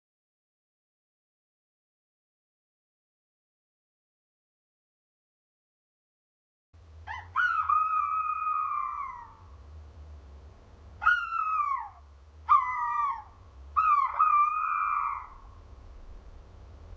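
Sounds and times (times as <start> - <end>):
faint low rumble: 6.8 - 16.9
owl calling: 7.1 - 9.5, 11.0 - 15.6.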